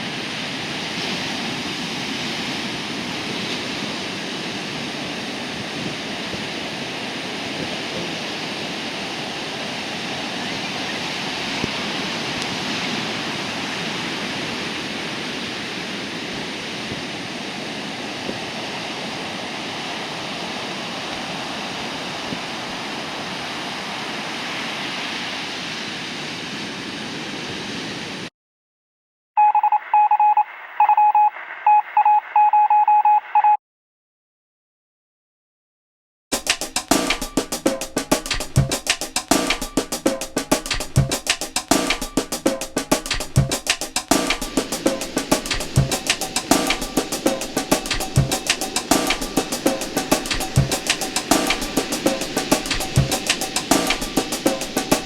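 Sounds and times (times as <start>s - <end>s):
ocean surf breaking: 0.0s - 28.3s, 36.3s - 55.0s
rapid electronic beeps: 29.4s - 33.6s.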